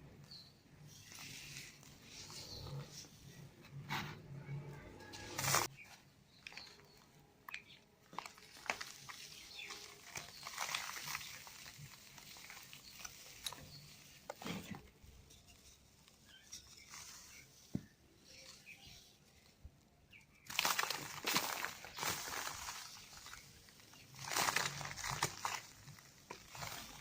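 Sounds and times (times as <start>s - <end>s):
dry cement crumbling: 6.4s - 15.0s, 20.4s - 27.0s.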